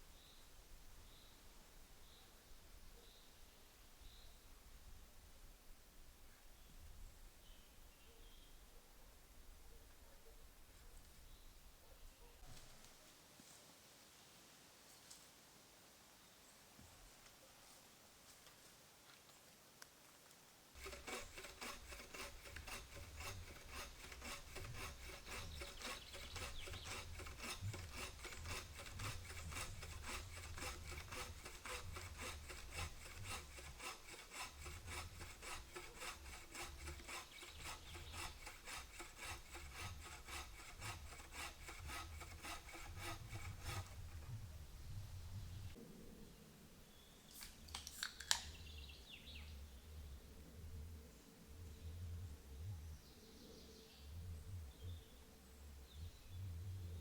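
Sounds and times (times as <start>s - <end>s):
back-and-forth rasping strokes: 20.8s - 45.8s.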